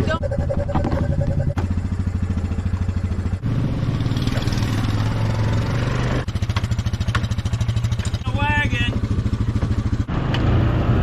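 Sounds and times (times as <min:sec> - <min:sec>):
heavy equipment engine running: 0:00.0 - 0:03.4.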